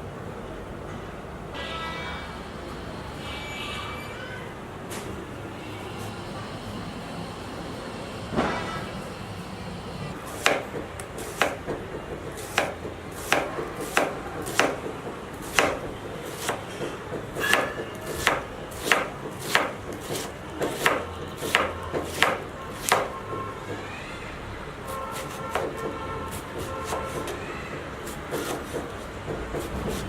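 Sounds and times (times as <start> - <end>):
knife chopping on cutting board: 10.3 - 16.7, 17.4 - 23.1, 28.1 - 30.0.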